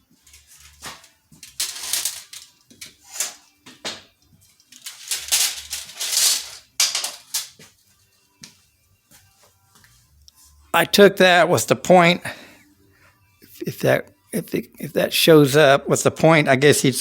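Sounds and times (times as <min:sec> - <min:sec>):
small parts rustling and rattling: 0:00.1 - 0:03.4, 0:04.4 - 0:07.7.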